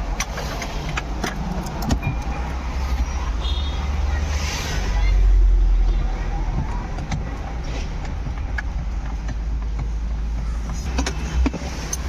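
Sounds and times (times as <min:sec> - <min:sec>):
hand tools tapping on metal: 0:00.1 - 0:02.7, 0:06.0 - 0:12.0.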